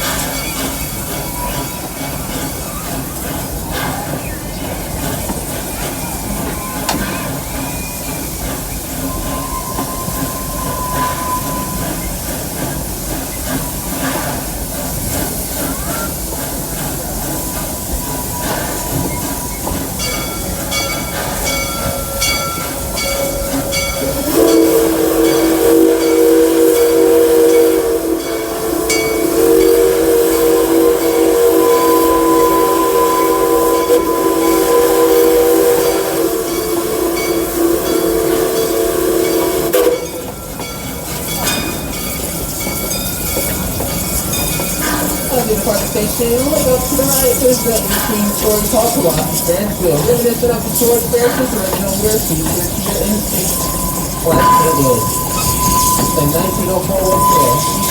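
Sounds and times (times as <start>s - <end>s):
locomotive bell ringing: 0.0s - 57.9s
steam locomotive hiss and rumble: 0.0s - 57.9s
steam whistle blowing: 9.0s - 12.6s, 17.4s - 40.7s, 43.4s - 57.9s.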